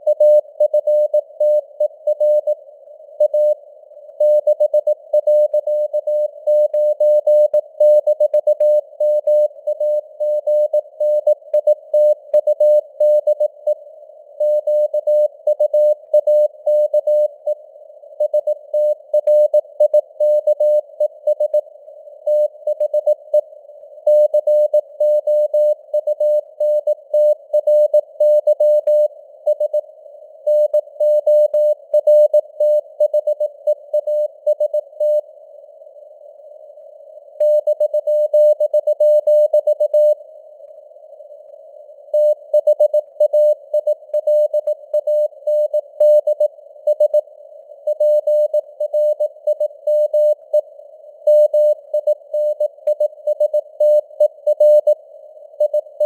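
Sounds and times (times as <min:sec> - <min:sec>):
morse code beeps: 0:51.3 - 0:55.0.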